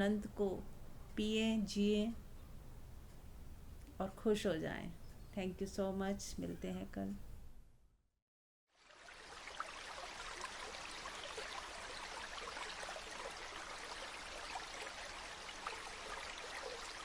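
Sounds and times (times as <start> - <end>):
small stream babbling: 8.8 - 17.0.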